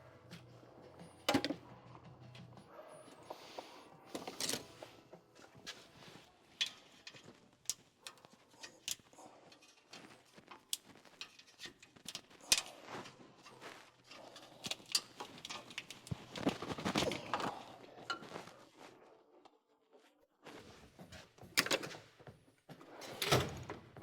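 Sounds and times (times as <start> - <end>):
hand tools clicking and tapping: 5.5 - 18.4.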